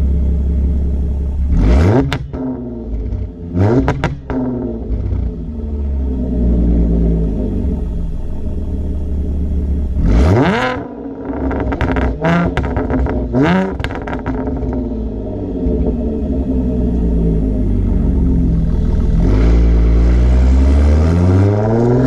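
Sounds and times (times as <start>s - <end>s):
car exhaust idling and revving: 0.0s - 22.0s
exhaust pops and crackles: 2.0s - 5.2s, 11.4s - 14.9s.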